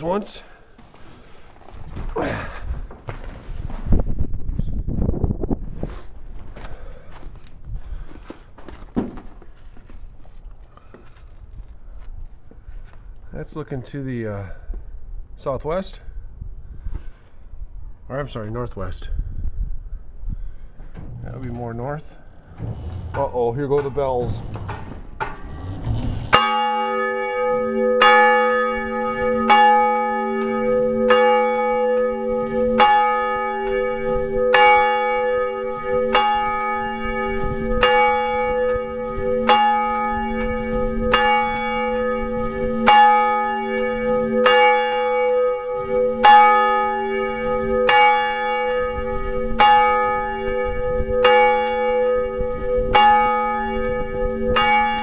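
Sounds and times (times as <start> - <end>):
church bell tolling: 26.3 - 55.0.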